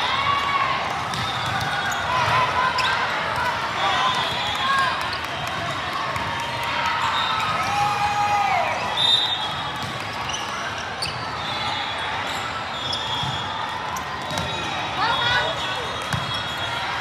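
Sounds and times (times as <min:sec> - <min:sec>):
crowd chatter: 0:00.0 - 0:17.0
shoe squeaks on court floor: 0:10.2 - 0:13.5.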